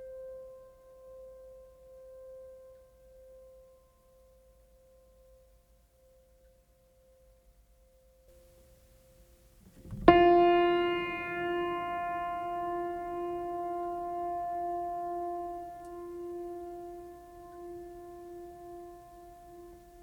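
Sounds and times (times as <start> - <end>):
deep bell-like note ringing: 10.1 - 20.0.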